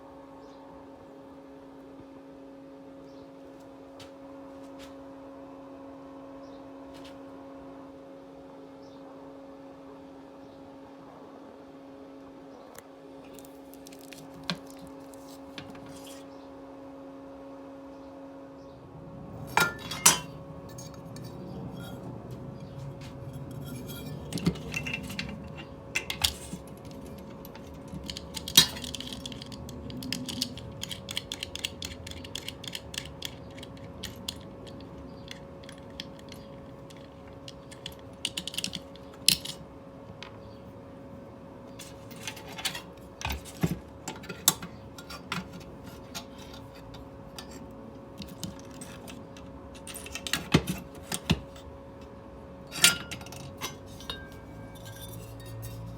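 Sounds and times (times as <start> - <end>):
faint steady hum: 0.0 - 55.9
metal tools clinking: 19.5 - 39.6, 52.7 - 55.9.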